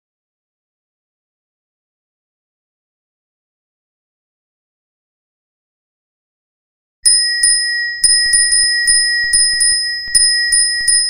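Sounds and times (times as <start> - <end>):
bicycle bell ringing: 7.0 - 11.0.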